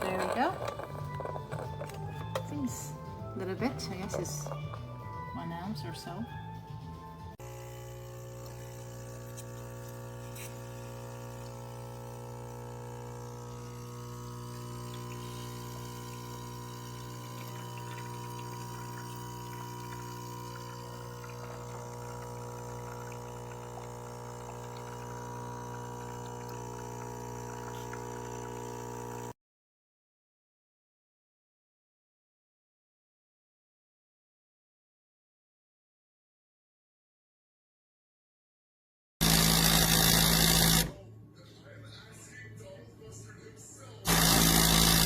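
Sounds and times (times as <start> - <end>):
espresso machine pump humming: 0.0 - 5.4, 7.4 - 29.4, 39.2 - 41.0, 44.1 - 45.0
espresso trickling into cup: 0.0 - 5.4, 7.4 - 29.3.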